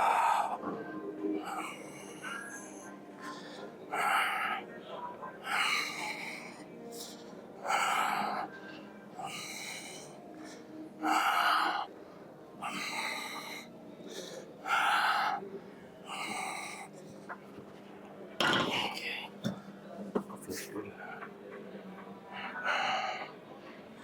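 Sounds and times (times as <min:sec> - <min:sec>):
man breathing hard: 0:00.0 - 0:00.6, 0:05.4 - 0:08.6, 0:09.2 - 0:16.9.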